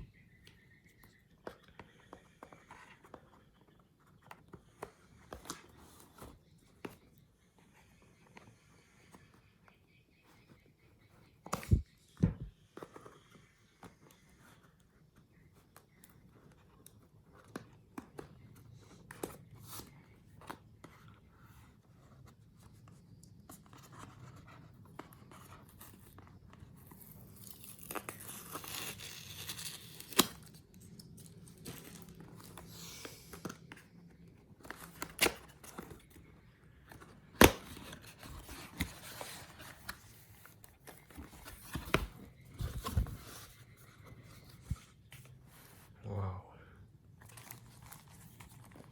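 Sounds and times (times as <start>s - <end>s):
wrapping tearing and crinkling: 27.2s - 32.6s.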